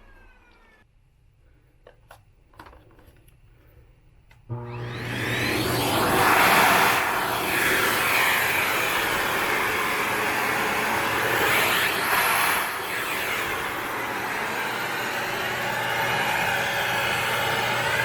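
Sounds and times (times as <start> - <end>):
vacuum cleaner motor hum: 4.5 - 18.0
rushing airflow through nozzle: 5.1 - 18.0.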